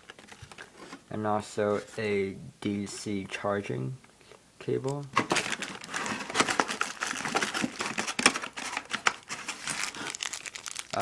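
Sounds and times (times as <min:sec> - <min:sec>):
plastic packaging crinkling: 0:00.0 - 0:01.0, 0:05.0 - 0:11.0.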